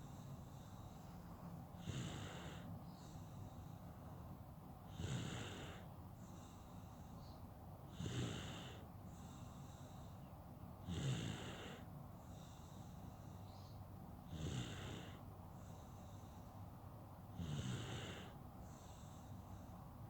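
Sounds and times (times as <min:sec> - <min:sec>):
baby snoring: 0:01.8 - 0:02.6, 0:17.4 - 0:18.4.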